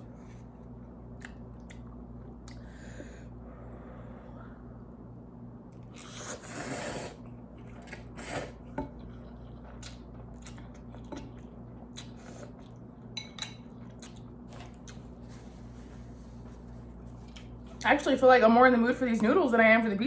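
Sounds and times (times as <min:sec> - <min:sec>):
low hum: 0:00.0 - 0:06.1
utensils clinking against a bowl: 0:13.1 - 0:13.8.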